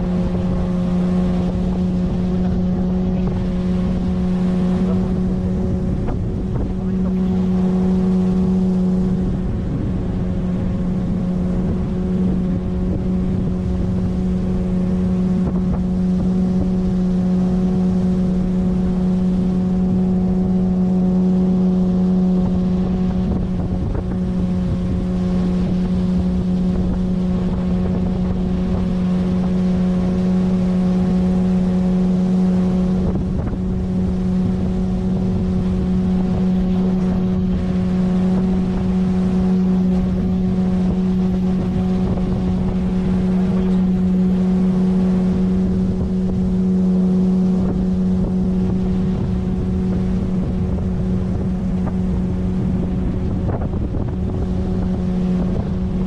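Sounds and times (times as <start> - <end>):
outboard motor droning: 0.0 - 56.0
wind buffeting microphone: 0.0 - 56.0.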